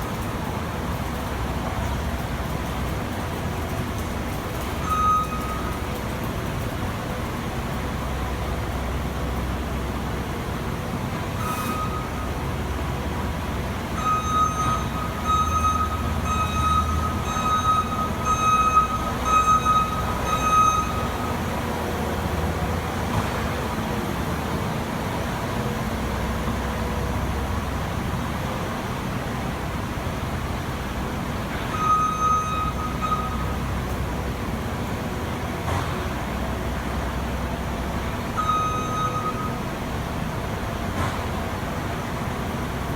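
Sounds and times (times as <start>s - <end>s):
reverse alarm beeping: 4.8s - 5.8s, 11.4s - 12.4s, 13.9s - 21.6s, 31.7s - 33.8s, 38.3s - 39.8s.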